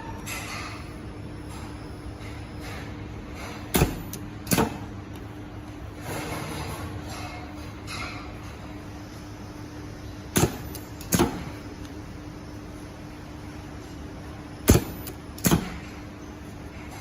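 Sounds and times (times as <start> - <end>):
machine low hum: 0.0 - 17.0
pneumatic welding head clacks: 3.4 - 4.9, 14.7 - 15.9.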